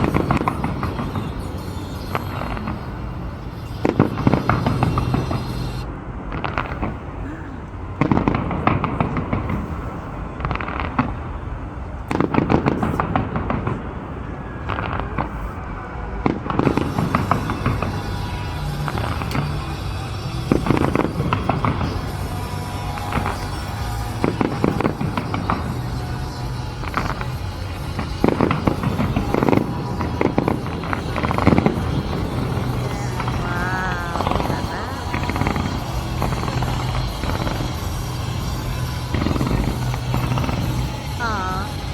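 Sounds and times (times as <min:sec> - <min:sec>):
music soundtrack: 0:00.0 - 0:06.0, 0:16.4 - 0:41.9
fireworks crackling pops: 0:00.0 - 0:07.2, 0:08.0 - 0:11.3, 0:12.0 - 0:41.9
fireworks booms rumbling: 0:07.8 - 0:41.9.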